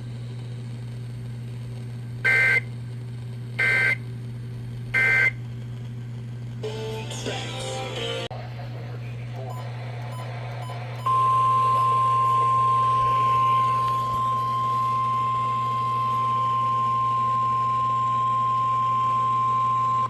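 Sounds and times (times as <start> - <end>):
steady low hum: 0.0 - 20.0
steady alarm tone: 9.5 - 20.0.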